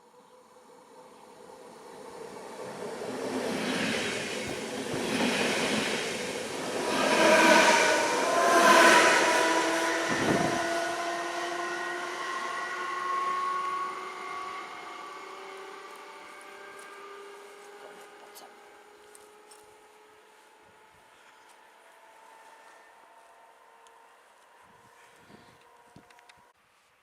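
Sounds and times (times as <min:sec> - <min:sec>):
steady whine: 0:00.5 - 0:18.3
train wheels rumbling: 0:01.4 - 0:18.3.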